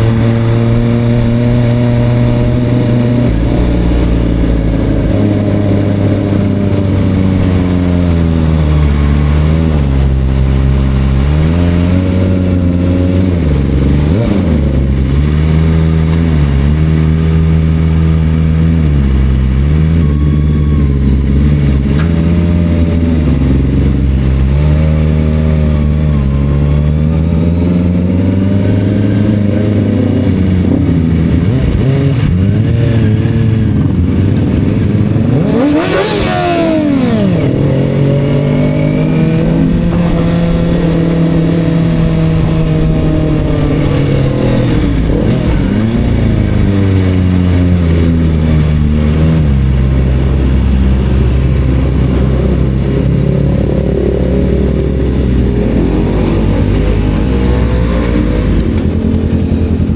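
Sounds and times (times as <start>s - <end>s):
motorcycle engine cruising: 0.0s - 59.9s.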